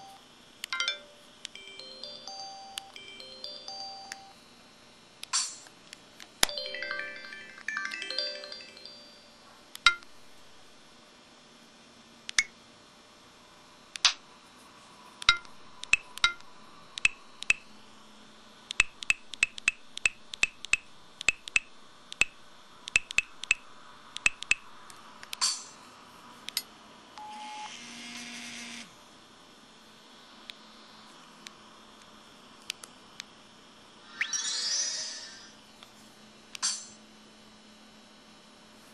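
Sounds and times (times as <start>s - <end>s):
phone keypad beeps: 0.8s - 4.4s
two-note tone over hiss: 0.8s - 4.4s.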